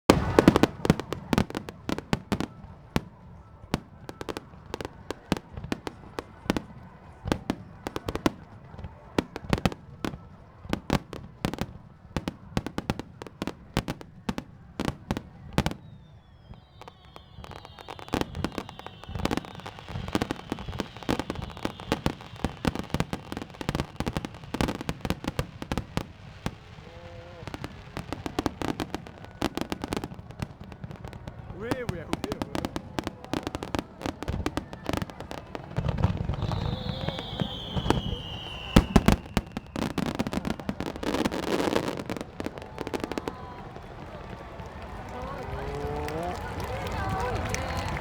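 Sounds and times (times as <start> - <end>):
fireworks bursting: 0.0 - 48.0.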